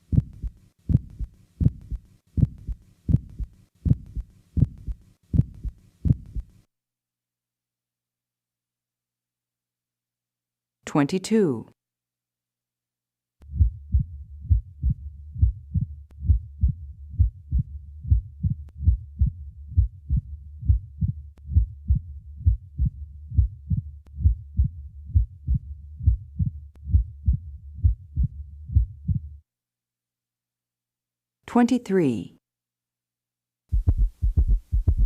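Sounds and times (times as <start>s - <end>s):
heartbeat thuds through stethoscope: 0.0s - 6.6s, 13.5s - 29.4s, 33.7s - 35.0s.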